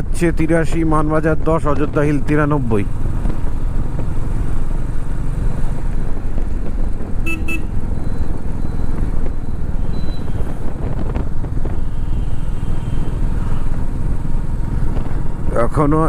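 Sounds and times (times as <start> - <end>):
motorcycle engine rumble: 0.0 - 16.0
wind and road noise: 0.0 - 16.0
vehicle horn beeps: 7.2 - 7.8.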